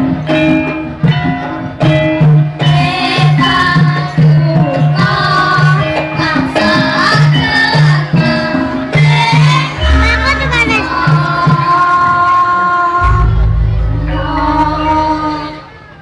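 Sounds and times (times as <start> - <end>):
gamelan ensemble playing: 8.2 - 12.3, 13.0 - 16.0
person singing: 13.0 - 15.8.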